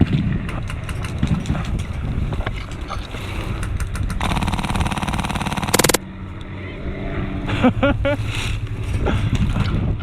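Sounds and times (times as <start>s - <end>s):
airsoft gunfire: 4.2s - 6.0s.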